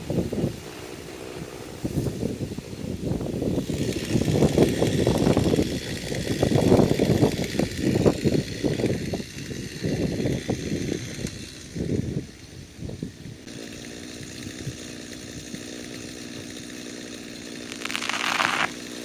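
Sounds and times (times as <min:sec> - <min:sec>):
wind buffeting microphone: 0:00.0 - 0:13.5
wind hissing through trees: 0:00.0 - 0:16.6.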